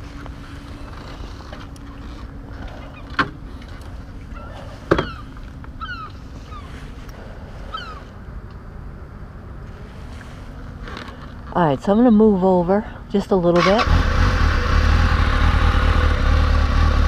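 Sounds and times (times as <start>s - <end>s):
steady low rumble: 0.0s - 17.0s
gulls calling: 4.1s - 8.2s.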